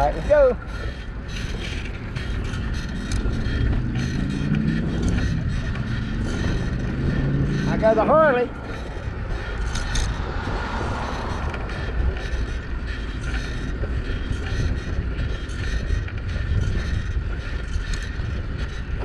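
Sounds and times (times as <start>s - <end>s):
bicycle creaks and rattles: 0.0s - 19.0s
wind rumbling on microphone: 0.0s - 19.0s.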